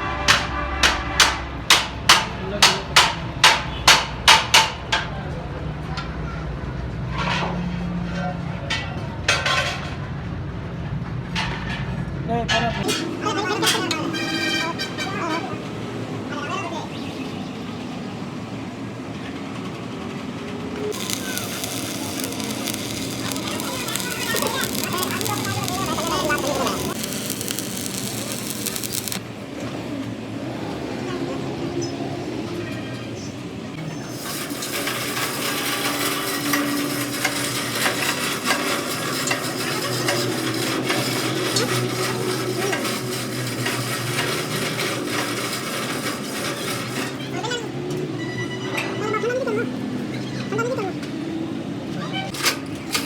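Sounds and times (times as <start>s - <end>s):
workshop noise: 0.1s - 5.1s, 20.9s - 30.2s, 33.8s - 47.9s
low traffic noise: 12.9s - 48.2s
arc welder crackling hiss: 20.9s - 29.3s, 40.4s - 46.8s.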